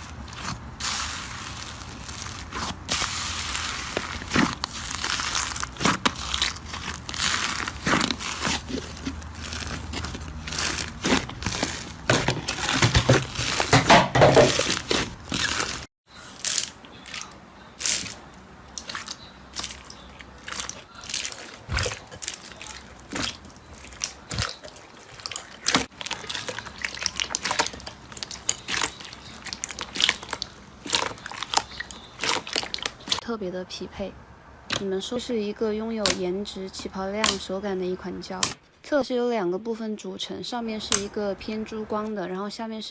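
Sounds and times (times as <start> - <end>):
slime crackling and popping: 0.0 - 33.2.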